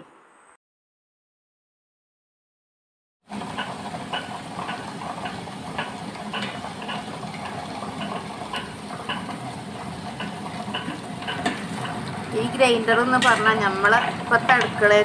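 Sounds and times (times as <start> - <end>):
wet grinder running: 3.3 - 15.0.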